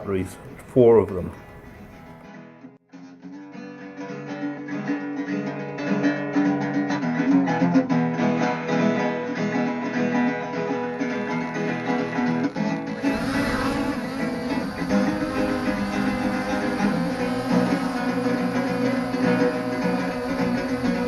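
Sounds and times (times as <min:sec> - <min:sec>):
acoustic guitar plucked and strummed: 0:01.9 - 0:21.0.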